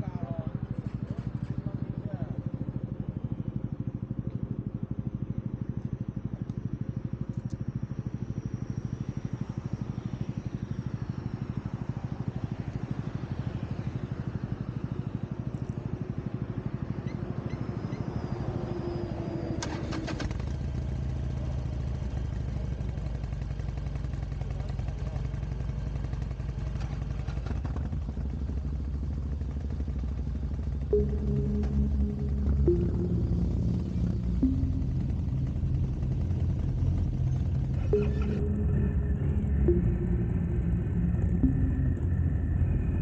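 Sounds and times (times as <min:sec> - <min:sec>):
motorcycle engine running: 0:20.3 - 0:43.0.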